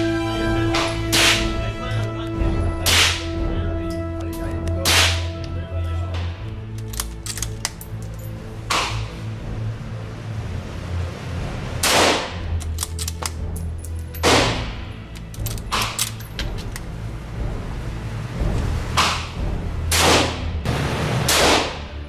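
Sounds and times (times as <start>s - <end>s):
steady low hum: 0.0s - 21.3s
gunshots: 11.8s - 12.4s, 19.0s - 22.0s.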